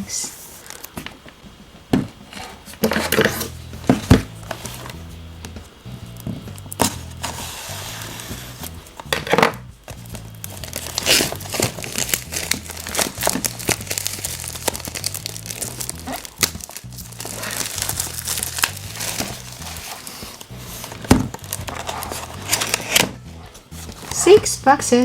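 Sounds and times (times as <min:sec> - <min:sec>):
background music: 0:02.8 - 0:25.0
packaging crinkling and tearing: 0:10.1 - 0:23.2.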